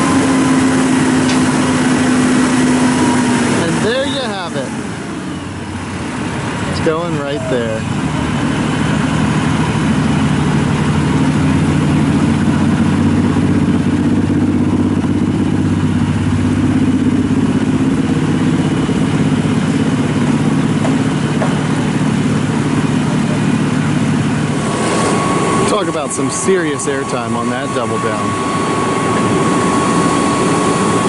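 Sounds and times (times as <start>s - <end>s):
large engine humming: 0.0s - 31.0s.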